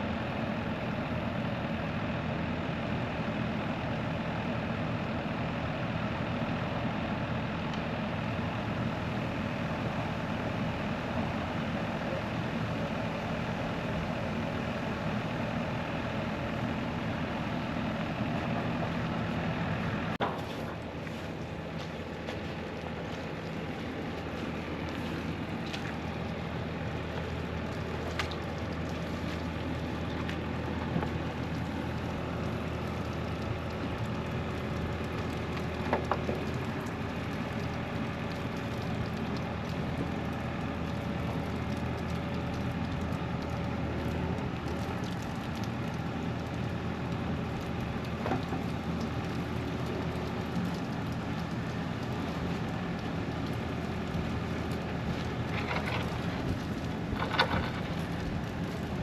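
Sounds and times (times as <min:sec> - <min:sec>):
engine running: 0:00.0 - 0:59.0
steady rain falling: 0:20.8 - 0:59.0.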